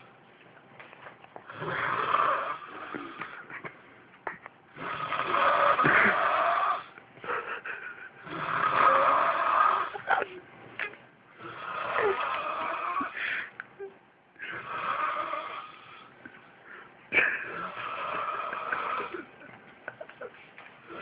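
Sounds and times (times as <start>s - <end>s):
person snoring loudly: 1.5s - 3.5s, 4.7s - 7.0s, 8.2s - 10.2s, 11.4s - 13.2s, 14.4s - 16.1s, 17.3s - 19.3s
quiet breaths: 10.0s - 17.1s.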